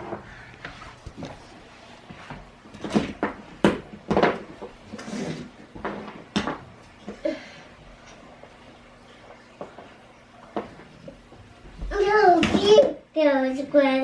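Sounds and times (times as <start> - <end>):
objects knocking and clunking: 0.0 - 7.3, 9.3 - 13.0.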